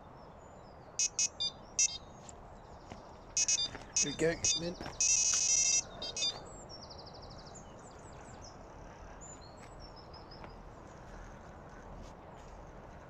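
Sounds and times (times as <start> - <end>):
outdoor background hiss: 0.0 - 13.0
small birds chirping: 0.0 - 13.0
bird trill: 1.0 - 2.3, 3.4 - 8.6.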